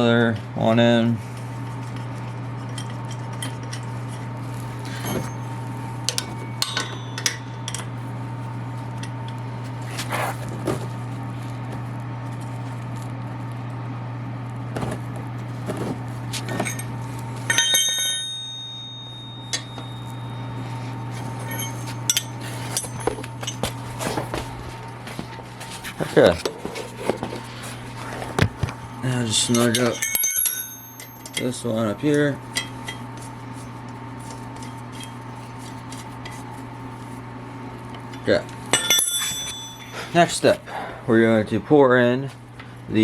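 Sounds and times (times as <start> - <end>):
ringing metallic clink: 6.1 - 7.9, 17.5 - 20.6, 21.4 - 23.0, 29.5 - 31.6, 38.7 - 40.2
metal parts and tools clinking: 17.5 - 20.2, 21.2 - 24.2, 29.4 - 31.6, 38.7 - 40.4.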